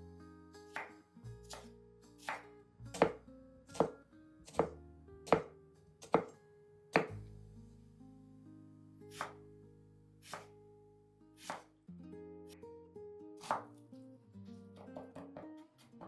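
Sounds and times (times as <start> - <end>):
soft background music: 0.0 - 16.0
knife chopping on cutting board: 0.7 - 6.3, 7.0 - 7.2, 9.1 - 9.4, 10.2 - 10.5, 11.4 - 11.7, 13.4 - 13.7.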